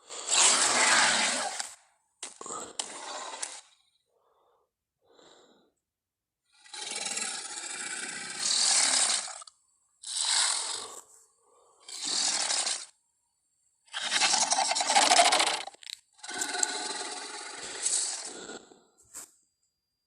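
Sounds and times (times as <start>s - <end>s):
rasping breathy dinosaur growls: 6.6s - 13.0s, 14.0s - 19.0s.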